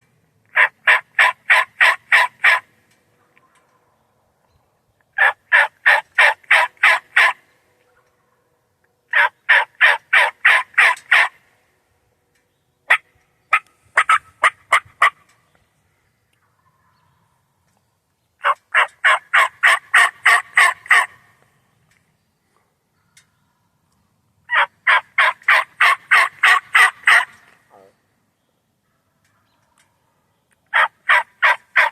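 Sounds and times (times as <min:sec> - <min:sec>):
turkey yelping: 0:00.5 - 0:02.7, 0:05.2 - 0:07.4, 0:09.1 - 0:11.4, 0:12.9 - 0:15.3, 0:18.4 - 0:21.2, 0:24.5 - 0:27.9, 0:30.7 - 0:31.9.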